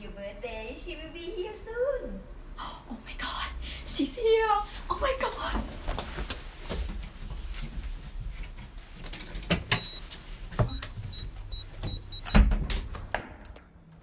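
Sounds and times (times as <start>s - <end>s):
short high electronic beeps: 9.7s - 12.4s.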